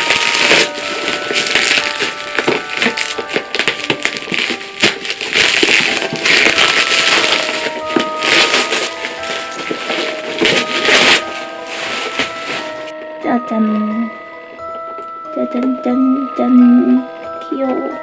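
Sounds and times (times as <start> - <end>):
plastic packaging crinkling: 0.0 - 13.0
light background music: 0.0 - 18.0.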